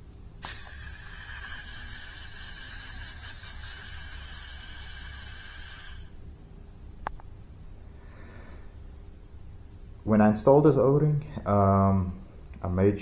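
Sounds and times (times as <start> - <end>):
pressurised gas hissing: 0.4 - 6.3.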